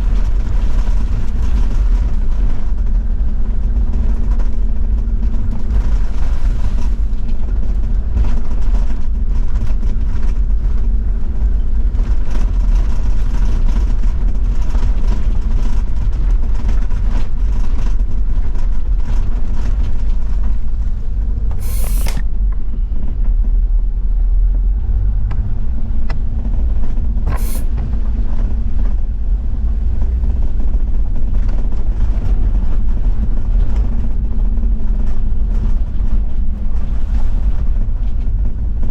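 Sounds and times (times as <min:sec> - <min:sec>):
vehicle engine driving: 0:00.0 - 0:38.8
short hisses: 0:21.5 - 0:22.2, 0:27.3 - 0:27.7.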